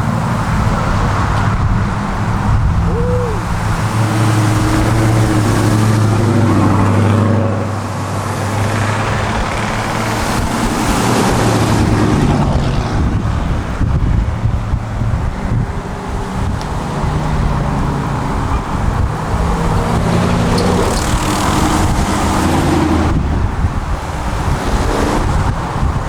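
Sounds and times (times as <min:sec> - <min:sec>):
road noise: 0:00.0 - 0:26.0
vehicle engine humming: 0:00.0 - 0:26.0
wind noise: 0:00.0 - 0:26.0.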